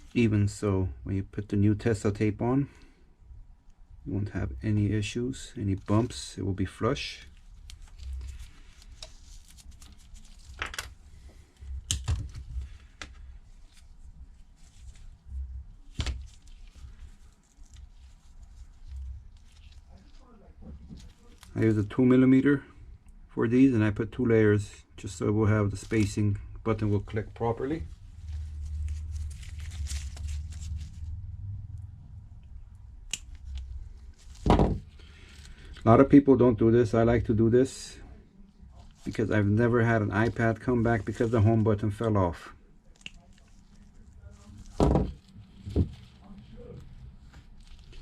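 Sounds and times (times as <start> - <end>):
low steady hum: 0.0 - 48.0
tape crinkling and ticking: 7.2 - 22.2, 25.7 - 35.9, 38.5 - 48.0.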